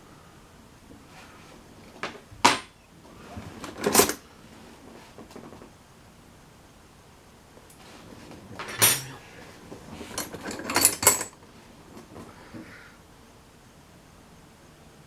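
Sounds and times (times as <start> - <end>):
metal tools clinking: 8.6 - 9.2, 10.1 - 11.4.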